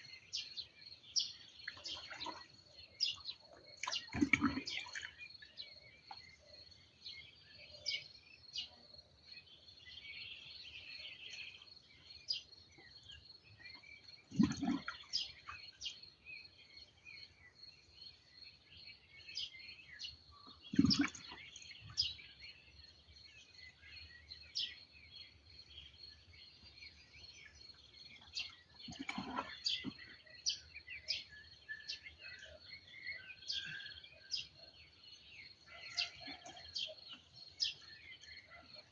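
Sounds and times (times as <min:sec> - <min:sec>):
small birds chirping and singing: 0:00.0 - 0:38.9.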